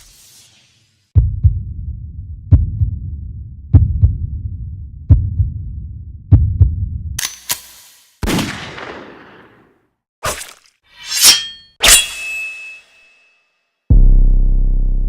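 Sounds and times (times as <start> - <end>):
heartbeat thumps: 1.2 - 7.2
low throb: 1.2 - 7.2, 13.9 - 15.0.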